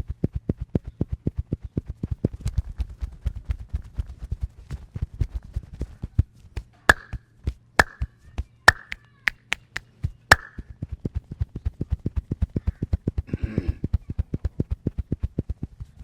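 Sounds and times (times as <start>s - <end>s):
sharp slaps on body: 6.9s - 7.2s, 7.8s - 8.1s, 8.7s - 10.6s
rapid massage chopping pats: 6.9s - 8.1s, 8.7s - 10.6s.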